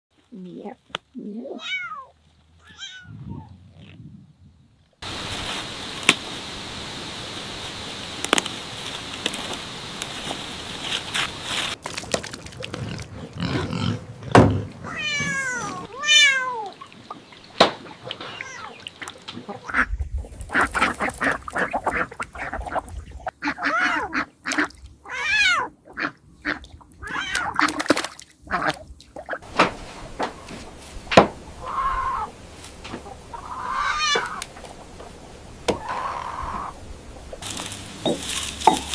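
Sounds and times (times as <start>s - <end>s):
cats meowing: 1.6s - 3.5s, 14.8s - 16.9s, 18.2s - 18.8s, 23.4s - 24.2s, 25.0s - 25.7s, 27.0s - 27.8s, 31.6s - 32.3s, 33.3s - 34.4s
steady hiss: 5.0s - 11.8s, 29.4s - 38.9s.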